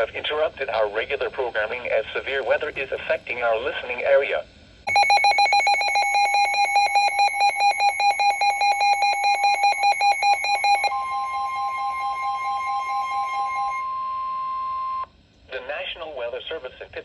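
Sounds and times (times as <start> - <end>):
rapid electronic beeping: 4.9 - 13.9
steady warning alarm tone: 4.9 - 15.1.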